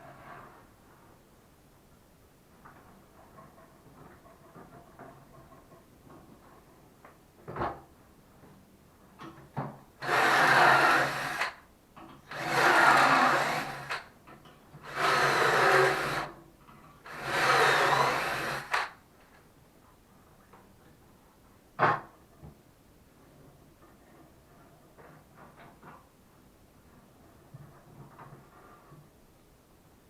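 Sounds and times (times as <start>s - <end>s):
power tool cutting wood: 10.0s - 11.6s, 12.3s - 14.1s, 14.8s - 16.3s, 17.1s - 19.0s.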